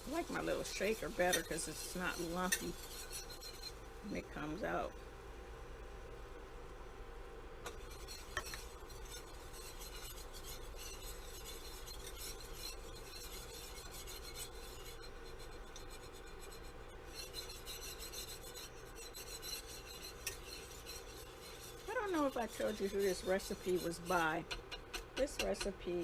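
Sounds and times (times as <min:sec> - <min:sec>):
whisk scraping in pot: 0:00.0 - 0:04.8, 0:07.6 - 0:26.0.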